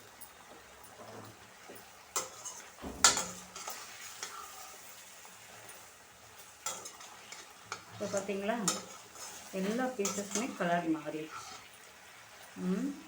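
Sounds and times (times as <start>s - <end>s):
chicken frying in oil: 0.0s - 13.0s
utensil scraping and knocking pan: 2.2s - 4.4s.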